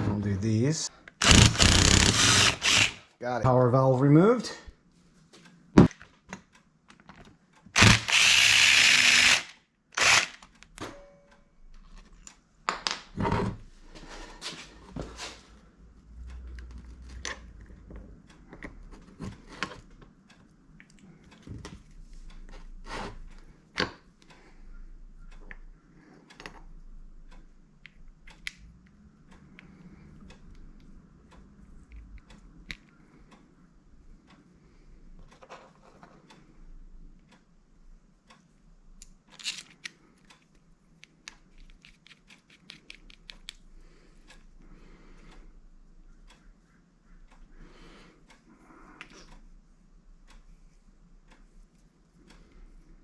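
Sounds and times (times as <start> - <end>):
metal parts clicking and knocking: 39.3 - 40.4.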